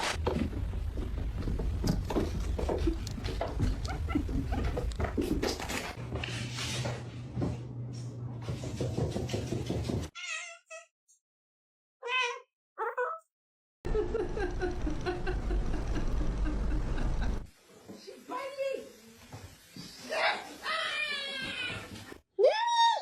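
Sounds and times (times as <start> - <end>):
cat meowing: 10.2 - 10.9, 12.0 - 13.3
steady low hum: 13.9 - 17.5.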